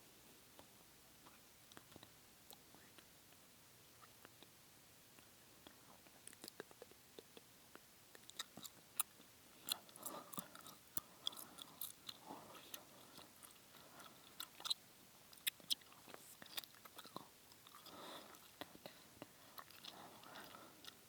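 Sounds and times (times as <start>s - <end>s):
gum chewing: 5.2s - 21.0s.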